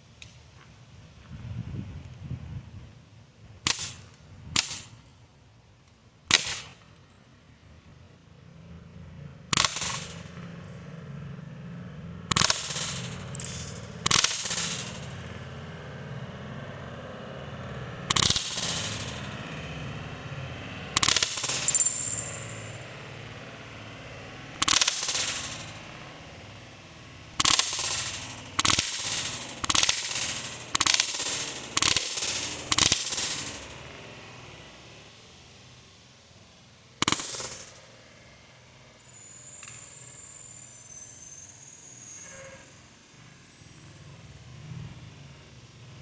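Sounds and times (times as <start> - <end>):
air pistol shots popping: 3.7 - 5.0, 6.3 - 6.8, 9.5 - 10.6, 12.3 - 15.3, 18.1 - 19.6, 21.0 - 22.7, 24.5 - 25.9, 27.3 - 33.8, 37.0 - 37.8.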